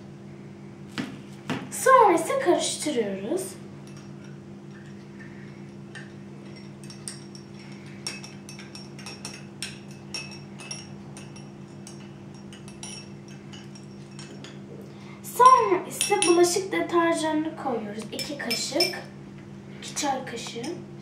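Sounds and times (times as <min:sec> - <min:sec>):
spoon clinking in a glass: 0:05.9 - 0:14.6, 0:15.4 - 0:16.5.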